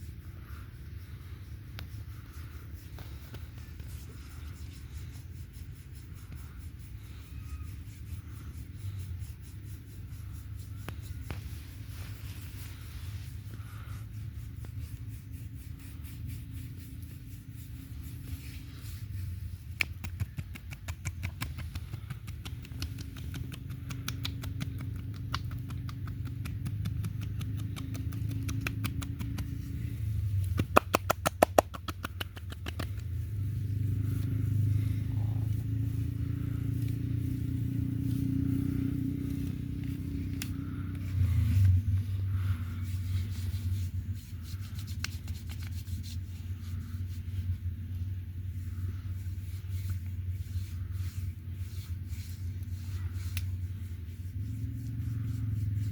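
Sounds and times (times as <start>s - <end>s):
low steady hum: 0.0s - 55.9s
wet slaps of hands on oiled skin: 19.7s - 29.6s, 30.5s - 33.1s.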